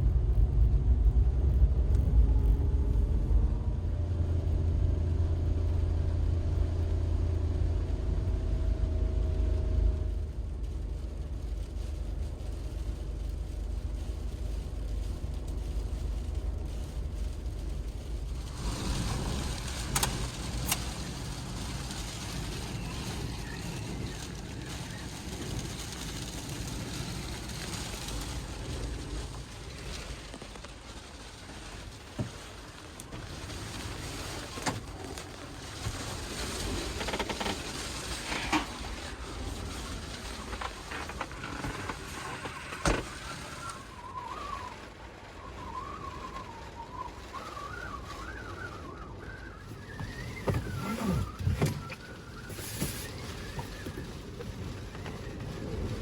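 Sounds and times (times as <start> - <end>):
wind buffeting a van: 0.0 - 56.0
wavering wind whistle: 43.2 - 54.3.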